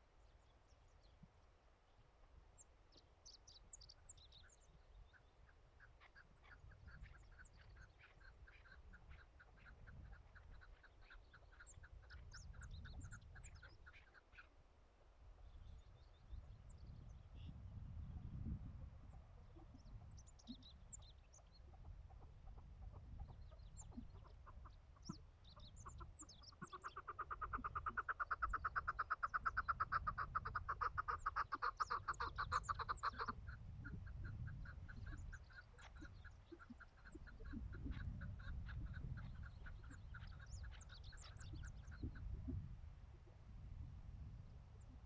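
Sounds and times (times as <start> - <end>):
small birds chirping: 0.2 - 14.6, 15.4 - 43.2
partridge clucking call: 21.8 - 42.6.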